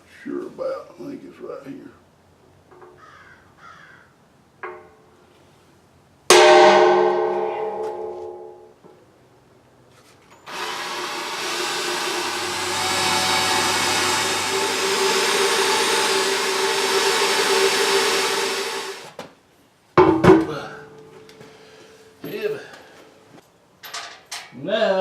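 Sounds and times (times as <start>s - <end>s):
sharp metal clank: 6.3s - 8.8s, 20.0s - 21.8s
electric drill running: 10.4s - 19.2s.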